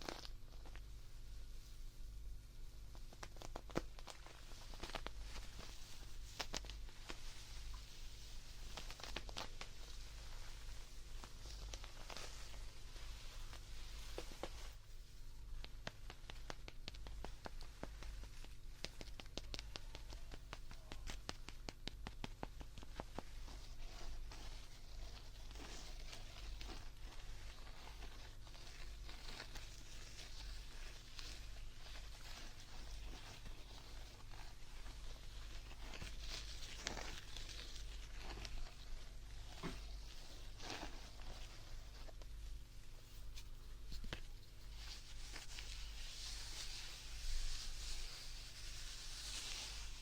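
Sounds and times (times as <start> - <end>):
rustling and crackling handling: 0.0 - 50.0
rapid light sharp clicks: 15.5 - 23.2.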